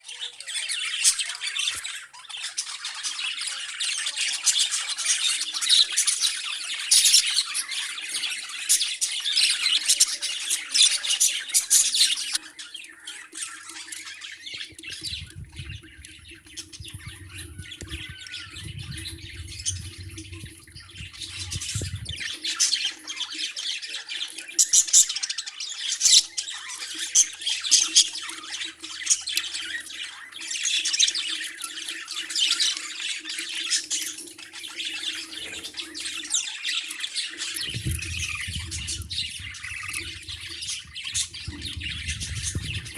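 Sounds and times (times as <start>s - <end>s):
birds chirping and squawking: 0.0s - 42.9s
low rumble: 37.7s - 42.9s.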